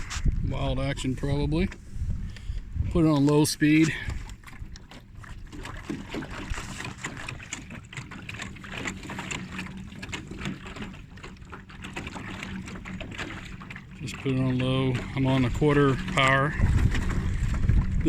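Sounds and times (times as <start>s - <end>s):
water splashing against hull: 0.0s - 18.0s
electric boat motor humming: 4.2s - 18.0s.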